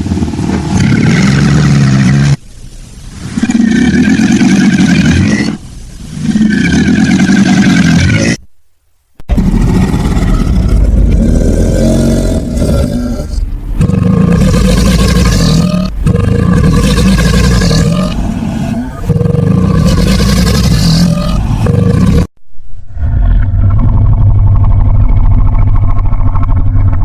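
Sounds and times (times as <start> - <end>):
alligator bellowing: 3.2 - 5.6, 6.2 - 8.4, 9.3 - 22.3.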